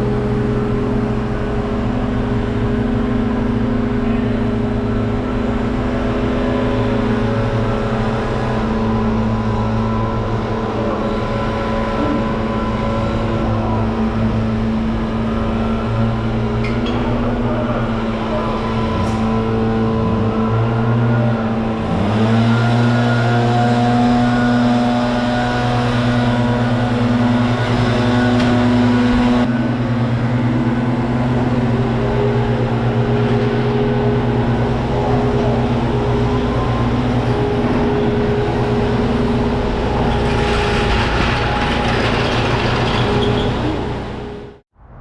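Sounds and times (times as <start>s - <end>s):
truck engine running: 0.0s - 44.6s
higher tone: 16.4s - 22.0s.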